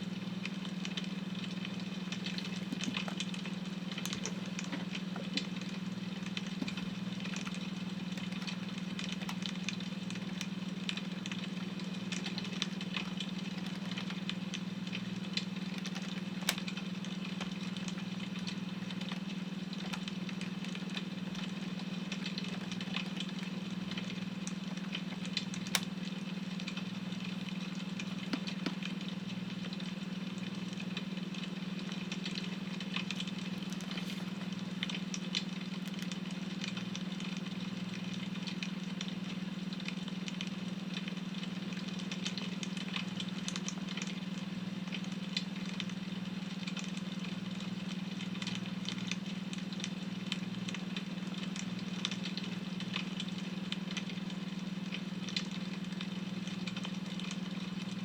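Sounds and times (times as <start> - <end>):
wood fire crackling: 0.2 - 40.2.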